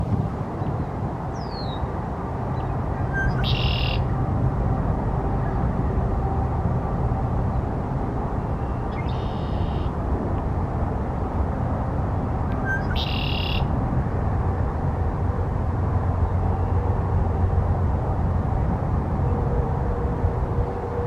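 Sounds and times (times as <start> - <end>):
steady low rumble: 0.0 - 21.0
blackbird harsh buzzy call: 3.1 - 4.0, 9.0 - 9.9, 12.7 - 13.7.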